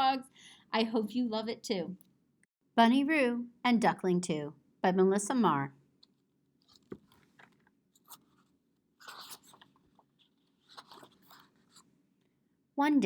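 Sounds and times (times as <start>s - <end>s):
book pages rustling: 6.0s - 11.9s.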